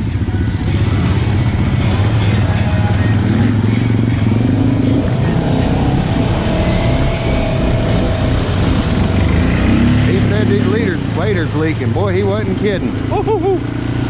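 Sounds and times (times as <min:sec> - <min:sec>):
atv engine revving: 0:00.0 - 0:14.0.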